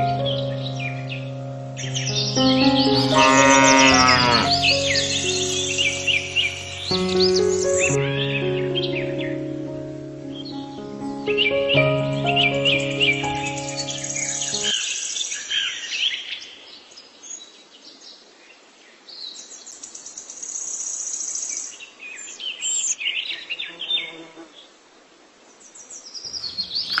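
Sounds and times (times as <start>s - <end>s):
birds chirping: 0.0s - 16.2s, 25.9s - 27.0s.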